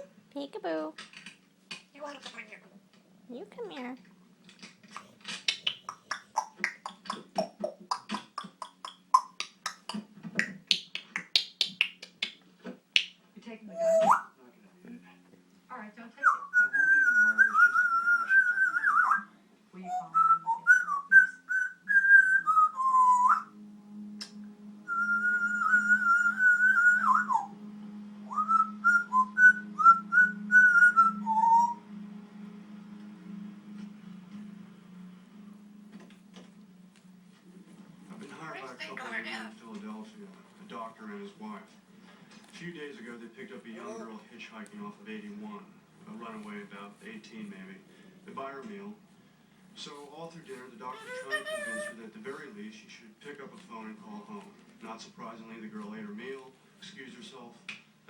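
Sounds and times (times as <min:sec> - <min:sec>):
parrot clicking and popping: 0:01.0 - 0:02.4, 0:04.4 - 0:13.2
parrot whistling: 0:13.7 - 0:14.4, 0:16.2 - 0:27.6, 0:28.2 - 0:32.0, 0:50.9 - 0:52.0.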